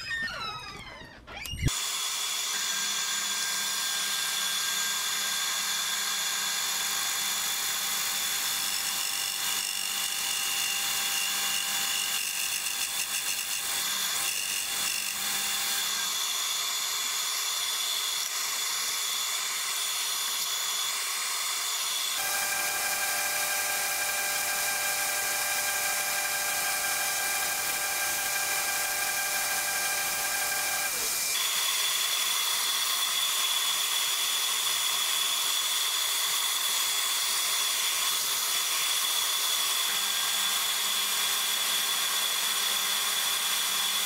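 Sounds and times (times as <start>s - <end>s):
electric power tool whining: 0.0s - 44.0s.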